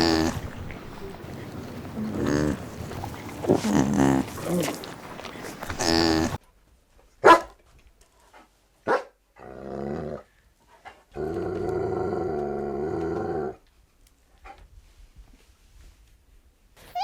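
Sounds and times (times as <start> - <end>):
animal calling: 0.0 - 6.4.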